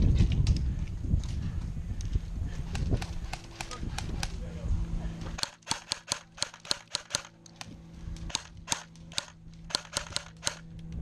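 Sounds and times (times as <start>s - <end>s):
airsoft guns firing: 5.4s - 10.7s.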